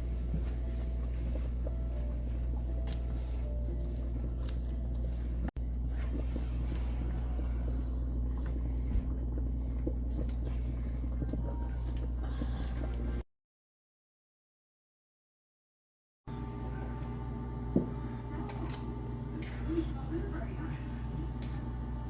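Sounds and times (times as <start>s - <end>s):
steady low hum: 0.0s - 13.2s, 16.3s - 22.0s.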